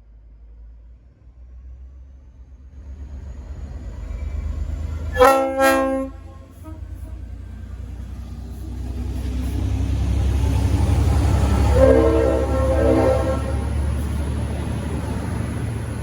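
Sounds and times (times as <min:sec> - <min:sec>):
locomotive rumble: 0:02.6 - 0:16.0
locomotive horn blasts: 0:05.1 - 0:07.2, 0:11.4 - 0:14.0.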